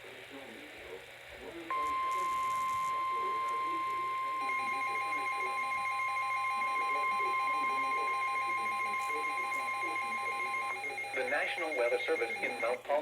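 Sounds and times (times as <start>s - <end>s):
steady alarm tone: 1.7s - 12.8s
warbling electronic alert tone: 3.2s - 12.8s.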